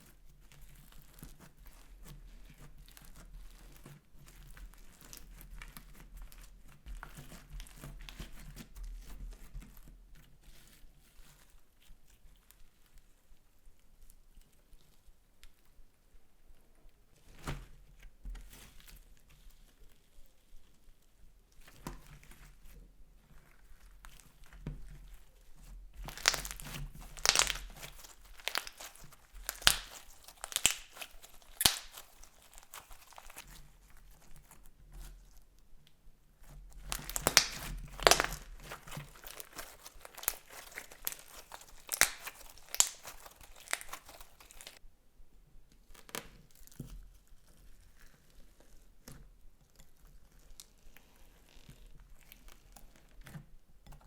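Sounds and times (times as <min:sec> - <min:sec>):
slime crackling and popping clicks: 0:26.0 - 0:33.4, 0:36.8 - 0:44.8
slime squeezed by hand: 0:26.0 - 0:33.6, 0:36.8 - 0:44.8.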